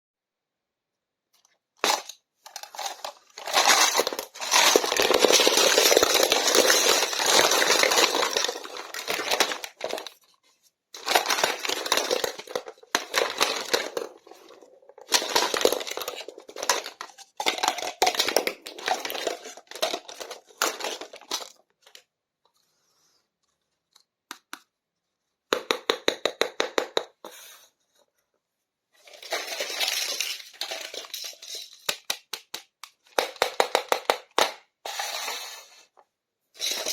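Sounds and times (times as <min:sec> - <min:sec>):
plastic toy pieces clicking: 0:01.8 - 0:10.1, 0:11.0 - 0:22.0, 0:29.2 - 0:34.6
plastic and paper tearing: 0:01.8 - 0:10.2, 0:11.0 - 0:21.3.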